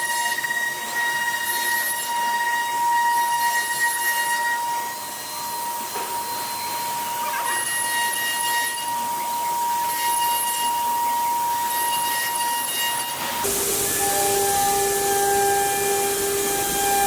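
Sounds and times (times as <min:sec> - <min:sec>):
hiss of wood cutting: 0:13.2 - 0:17.0
router spindle whining: 0:13.4 - 0:17.0.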